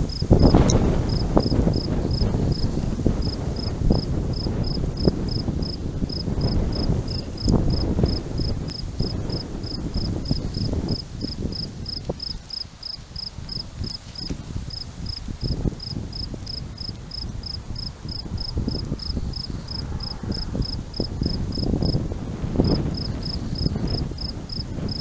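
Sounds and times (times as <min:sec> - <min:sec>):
cricket chirping: 0:00.0 - 0:08.5
wind buffeting microphone: 0:00.0 - 0:25.0.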